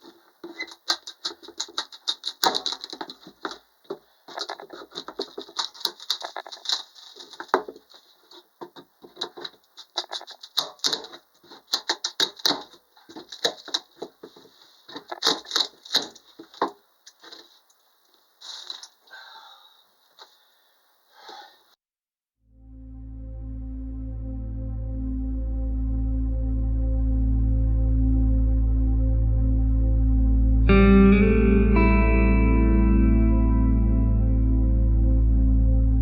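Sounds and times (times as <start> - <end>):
rapid irregular clicks and knocks: 0.0 - 17.8.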